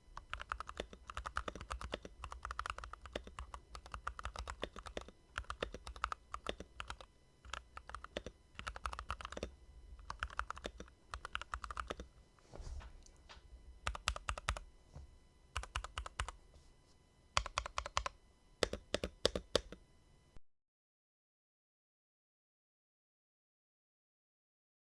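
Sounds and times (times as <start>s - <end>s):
typing on mechanical keyboard: 0.2s - 12.0s, 13.8s - 14.6s, 15.6s - 16.4s, 17.4s - 19.8s.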